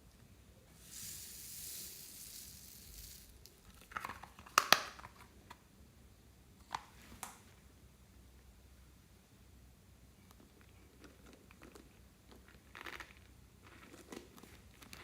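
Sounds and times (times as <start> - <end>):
slime hissing softly: 0.7 - 3.5.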